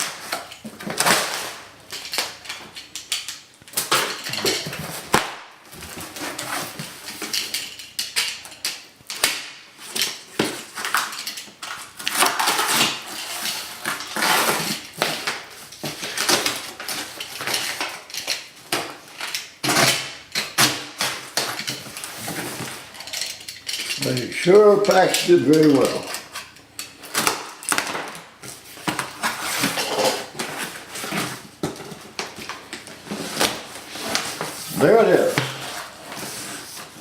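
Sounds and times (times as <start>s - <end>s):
cardboard and tape tearing: 10.3s - 17.9s, 27.0s - 32.3s, 32.9s - 37.0s.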